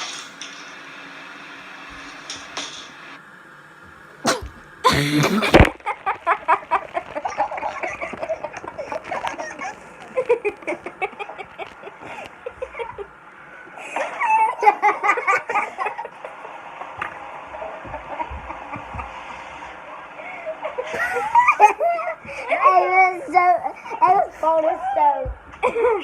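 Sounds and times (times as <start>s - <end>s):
loud burst of breath: 4.3s - 5.6s
laughter in quick bursts: 4.3s - 13.1s, 13.8s - 16.5s, 20.3s - 22.2s.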